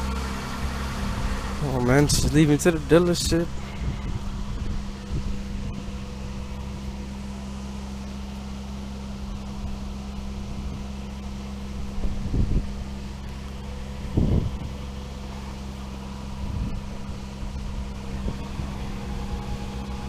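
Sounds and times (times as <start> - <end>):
truck engine humming: 0.0 - 20.0
wind buffeting microphone: 3.2 - 6.8, 11.9 - 12.9, 14.0 - 14.8.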